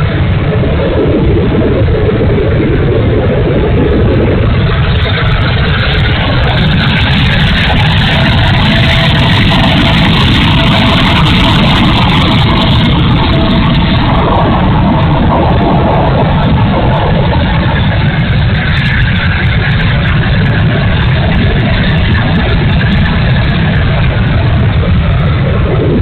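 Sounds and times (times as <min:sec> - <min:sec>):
wind rumble on microphone: 0:00.0 - 0:26.0
model jet fans whining: 0:01.4 - 0:26.0.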